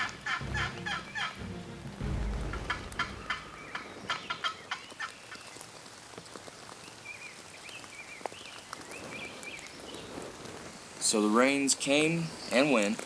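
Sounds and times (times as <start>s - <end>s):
turkey gobbling: 0.0s - 1.4s, 2.5s - 5.1s
low rumble: 0.0s - 4.4s
birds chirping: 0.0s - 5.7s.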